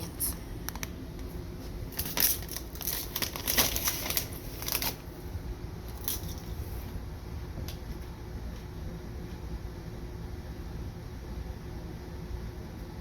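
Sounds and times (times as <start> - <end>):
plastic chip bag crinkling: 1.7 - 5.2, 5.9 - 6.6.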